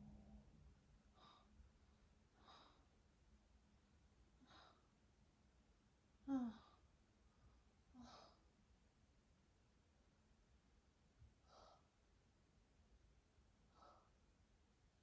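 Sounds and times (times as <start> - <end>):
woman breathing softly: 1.0 - 3.6, 4.2 - 5.4, 6.2 - 8.8, 11.2 - 12.8, 13.5 - 14.5
woman sighing: 6.2 - 6.8.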